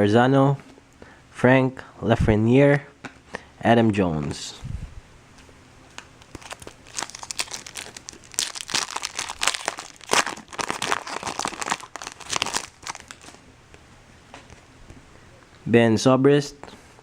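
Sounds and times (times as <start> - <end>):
foil wrapper crinkling: 5.9 - 13.4.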